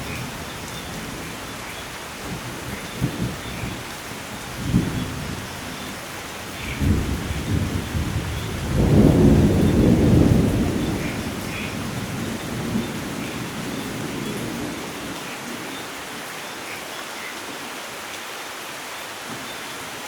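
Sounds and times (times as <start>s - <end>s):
steady rain: 0.0s - 20.0s
thunder rumbling: 2.2s - 15.0s.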